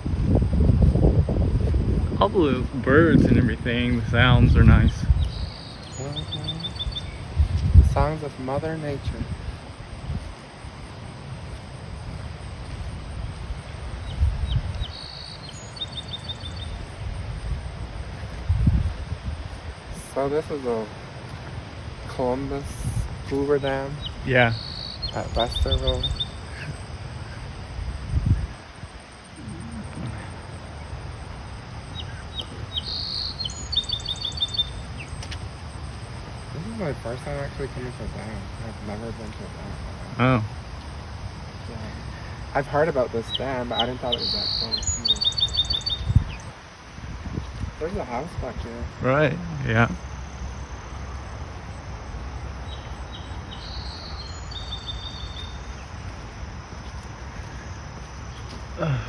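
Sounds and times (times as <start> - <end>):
steady low rumble: 0.0 - 58.8
songbird singing: 0.0 - 59.0
bird chirps: 0.9 - 10.9, 12.0 - 18.4, 22.1 - 28.6, 31.8 - 35.5, 41.6 - 46.6, 52.6 - 56.2.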